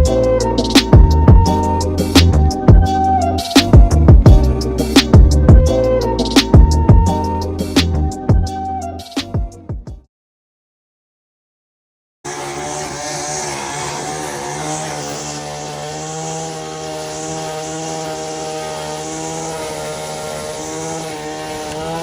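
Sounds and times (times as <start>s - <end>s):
power tool motor running: 12.3s - 22.0s.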